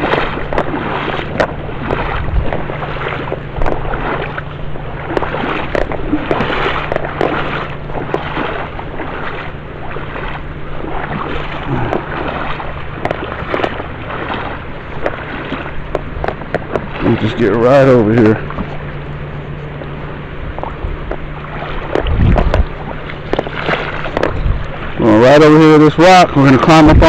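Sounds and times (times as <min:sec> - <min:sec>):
footsteps on wet rocks: 0:00.0 - 0:10.4, 0:11.0 - 0:17.2, 0:21.0 - 0:24.7
wind on microphone: 0:00.0 - 0:17.6, 0:20.4 - 0:25.2, 0:26.2 - 0:27.0
river water rushing: 0:00.0 - 0:27.0.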